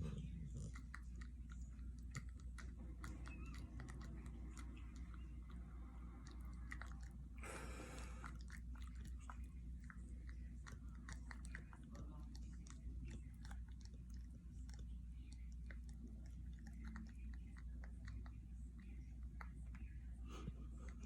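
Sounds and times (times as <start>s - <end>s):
steady low hum: 0.0s - 21.0s
dog mouth clicks and lip-smacking: 0.6s - 5.6s.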